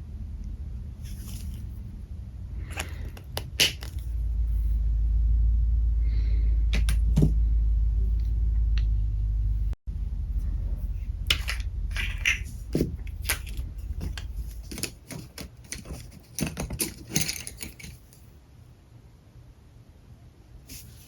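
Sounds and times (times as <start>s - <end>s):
low hum: 0.0s - 16.1s.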